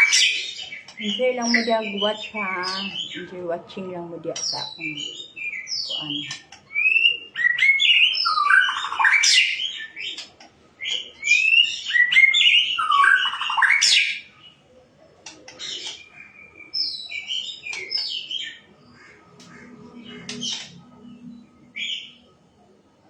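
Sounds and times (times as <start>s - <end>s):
bird singing gliding whistles: 4.8s - 10.2s.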